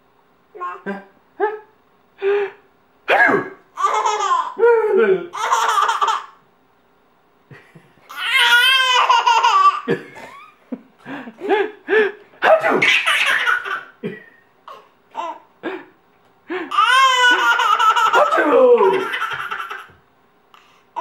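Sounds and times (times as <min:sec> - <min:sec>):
baby laughing: 0:00.6 - 0:01.6, 0:03.8 - 0:06.4, 0:08.1 - 0:10.6, 0:12.4 - 0:15.5, 0:16.7 - 0:20.0.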